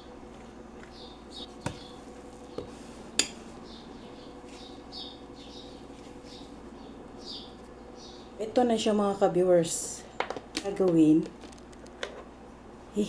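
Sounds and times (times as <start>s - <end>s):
small birds chirping: 0.9s - 2.8s, 3.6s - 8.6s.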